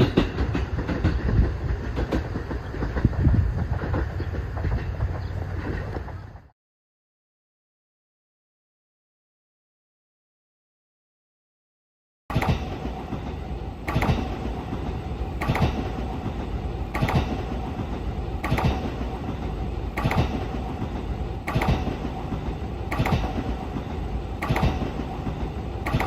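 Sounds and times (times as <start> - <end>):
train running on rails: 0.0 - 6.5, 12.3 - 26.0
wheels clicking over rail joints: 0.0 - 6.5, 12.3 - 26.0.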